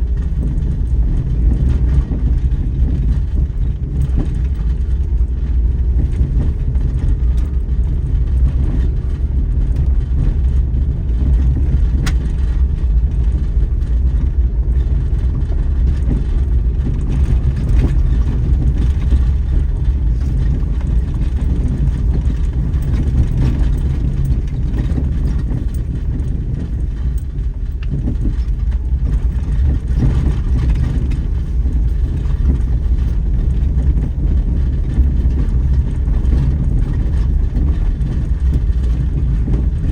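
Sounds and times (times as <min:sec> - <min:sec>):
car engine and road noise: 0:00.0 - 0:39.9.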